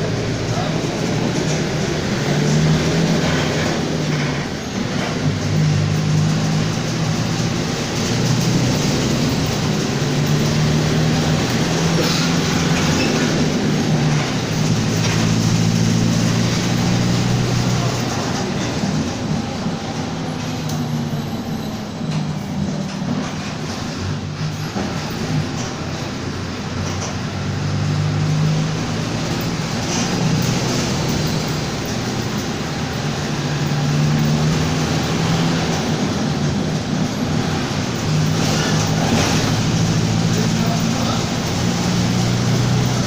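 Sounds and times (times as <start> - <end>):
bus engine droning: 0.0 - 43.0.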